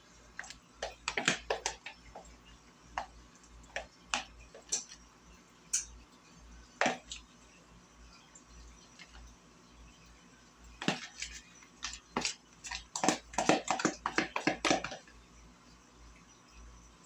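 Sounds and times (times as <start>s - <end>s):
kitchen utensils clicking: 4.2s - 5.0s.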